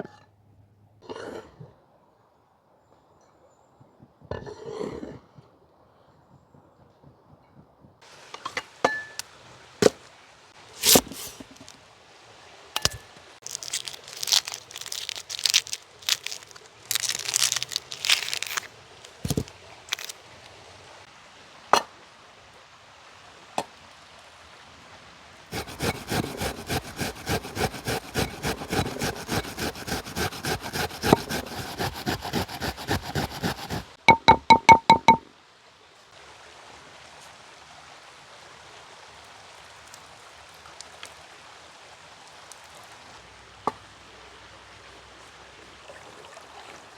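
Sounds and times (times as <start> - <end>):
cracks scrapes and crinkles: 10.7 - 11.8, 12.8 - 20.5, 25.5 - 34.0.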